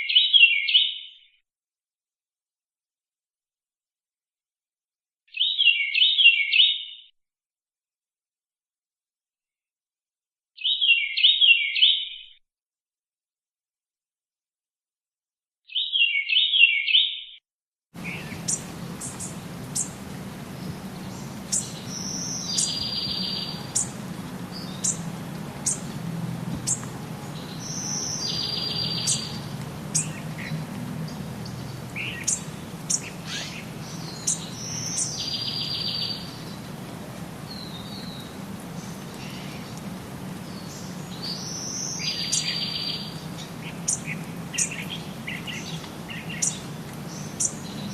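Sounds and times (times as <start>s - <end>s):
birds chirping: 18.0s - 47.9s.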